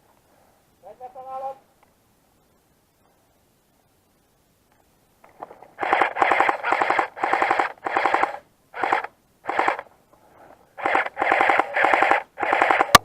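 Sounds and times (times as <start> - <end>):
airsoft gun firing bursts: 5.8 - 9.9, 10.8 - 13.0.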